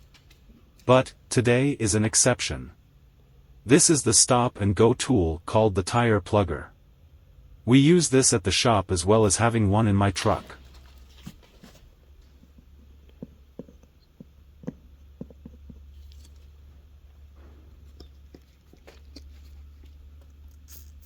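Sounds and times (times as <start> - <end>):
low steady hum: 0.0 - 21.0
handling clicks and knocks: 10.2 - 20.7.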